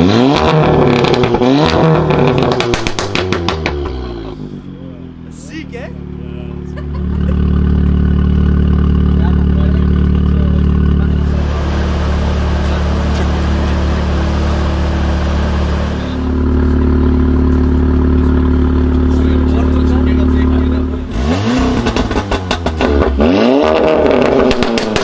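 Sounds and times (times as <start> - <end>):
car engine deep drone: 0.0 - 25.0
rushing noise: 11.0 - 17.4.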